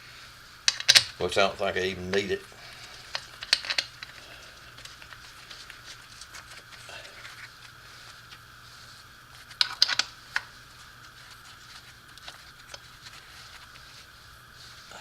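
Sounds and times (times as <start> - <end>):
faint steady hum: 0.0 - 15.0
small metal tools clinking: 3.0 - 4.3.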